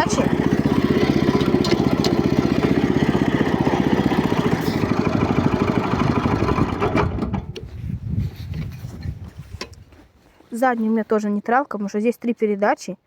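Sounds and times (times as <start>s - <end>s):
tractor engine running: 0.0s - 7.9s.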